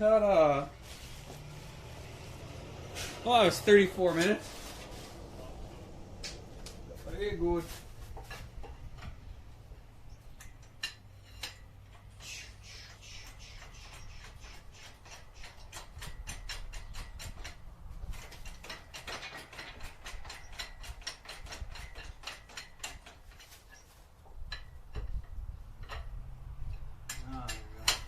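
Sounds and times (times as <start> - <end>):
ratchet clicking: 10.4 - 17.6, 18.2 - 23.6.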